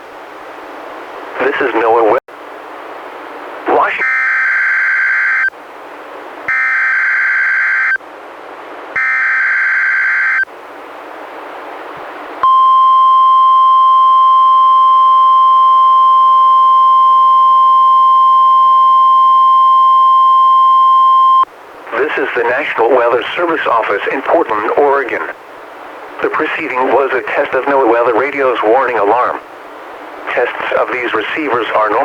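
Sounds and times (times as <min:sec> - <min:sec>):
radio hiss: 0:01.3 - 0:02.2, 0:03.6 - 0:04.0, 0:21.8 - 0:29.6, 0:30.2 - 0:32.0
steady warning alarm tone: 0:04.0 - 0:05.5, 0:06.5 - 0:08.0, 0:09.0 - 0:10.5, 0:12.4 - 0:21.4.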